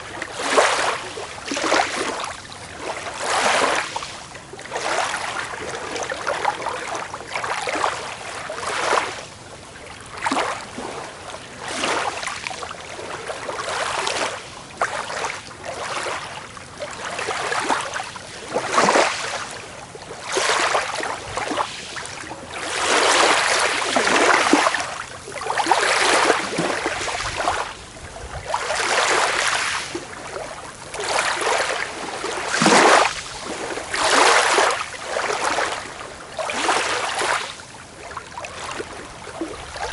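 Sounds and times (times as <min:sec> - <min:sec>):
small waves washing onto beach: 0:00.0 - 0:39.9.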